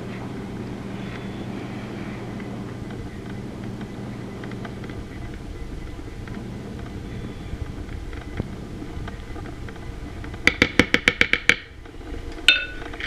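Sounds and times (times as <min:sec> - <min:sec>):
steady low hum: 0:00.0 - 0:13.0
utensil tapping against dish: 0:10.4 - 0:11.7.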